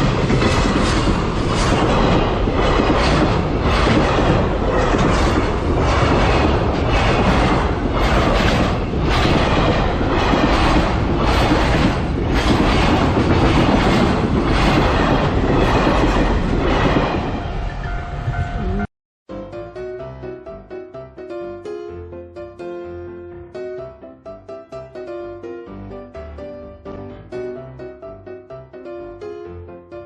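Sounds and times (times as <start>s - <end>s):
train wheels clacking on rail joints: 0.0s - 17.3s.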